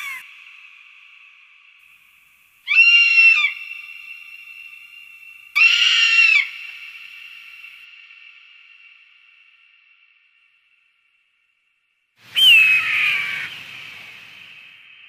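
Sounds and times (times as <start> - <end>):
hawk screaming with echo: 12.4 - 13.6.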